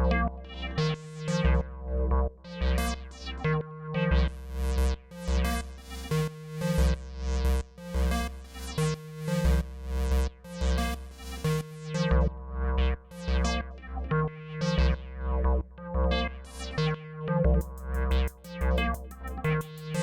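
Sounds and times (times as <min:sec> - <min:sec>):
deep bass pulse: 0:17.5 - 0:20.0.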